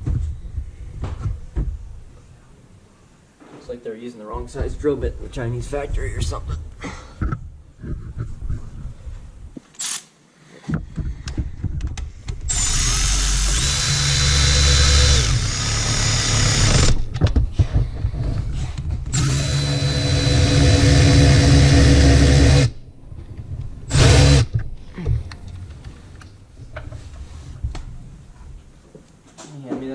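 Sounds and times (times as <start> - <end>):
power drill running: 12.5 - 17.0, 19.1 - 22.8, 23.9 - 24.5.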